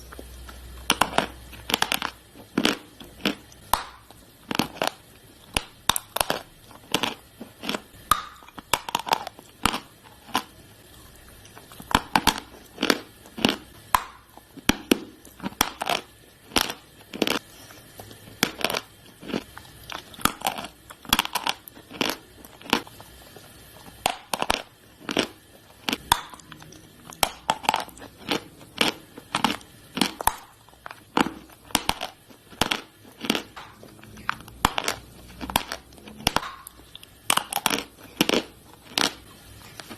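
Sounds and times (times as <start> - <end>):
chewing chalk crunches: 0.0 - 39.9.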